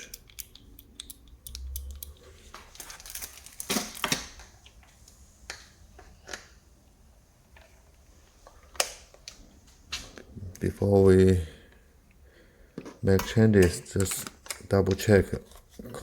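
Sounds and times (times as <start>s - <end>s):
plastic rustling: 2.1s - 5.0s.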